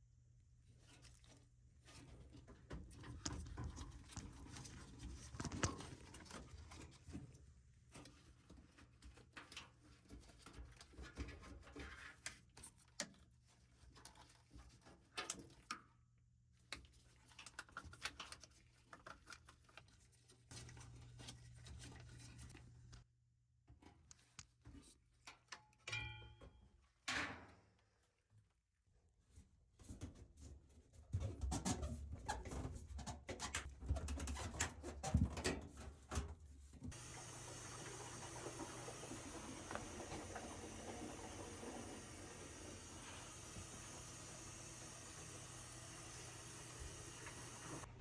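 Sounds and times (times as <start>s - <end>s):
rustling of parts: 0.8s - 15.8s.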